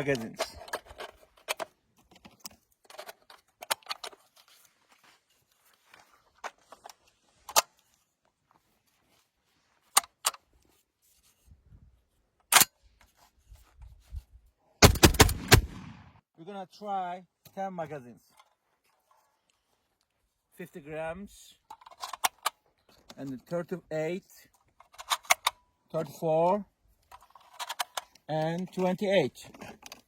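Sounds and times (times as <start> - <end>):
shotgun firing: 14.8 - 16.1.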